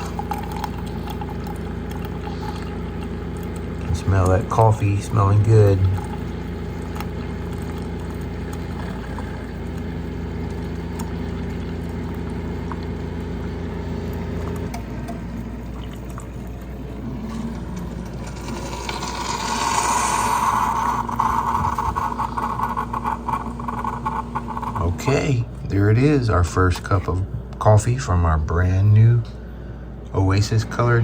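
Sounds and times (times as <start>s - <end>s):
coffee pouring into mug: 0.0s - 25.0s
coffee maker pump hum: 0.0s - 31.0s
hissing sputter: 18.2s - 25.0s.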